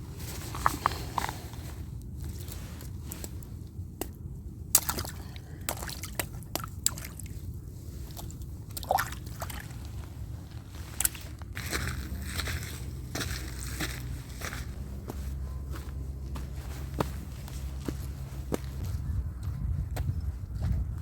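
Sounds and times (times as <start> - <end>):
footsteps squelching on wet ground: 4.0 - 10.1, 10.8 - 20.8.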